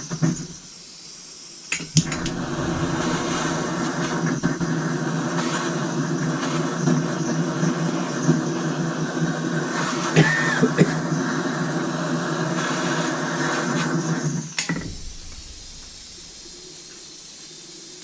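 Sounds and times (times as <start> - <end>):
faint low rumble: 2.0 - 5.1, 14.7 - 17.2.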